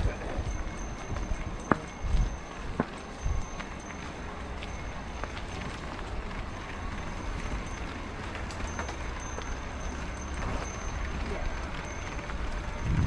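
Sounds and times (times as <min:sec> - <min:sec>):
wind rumbling on microphone: 0:00.0 - 0:03.6, 0:12.4 - 0:13.0
bike tyres rolling on dirt: 0:00.0 - 0:13.0
small ticks and rattles: 0:00.0 - 0:13.0.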